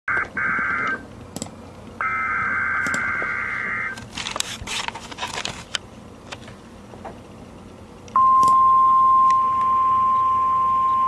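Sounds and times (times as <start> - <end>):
buzzing digital data tones: 2.0 - 4.0
crackling static: 2.0 - 5.7.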